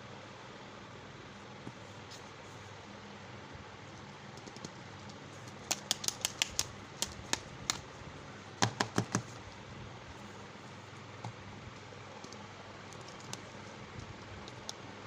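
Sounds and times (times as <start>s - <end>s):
candy packaging clicking: 4.6s - 7.9s.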